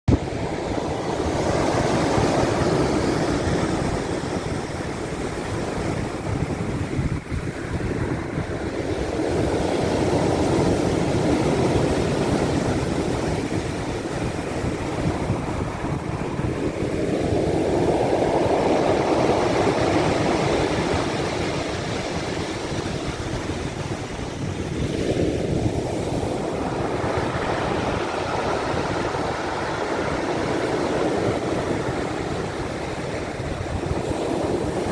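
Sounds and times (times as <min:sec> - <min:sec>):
waves washing on shore: 0:00.2 - 0:34.9.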